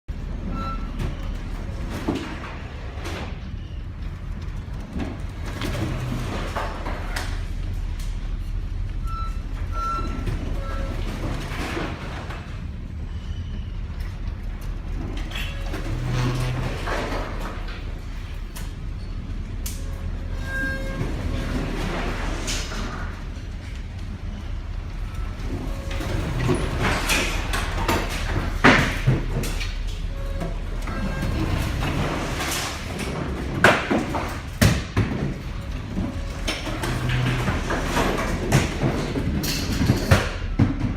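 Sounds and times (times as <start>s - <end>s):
steady low rumble: 2.8s - 11.4s, 12.1s - 20.4s, 23.1s - 26.8s.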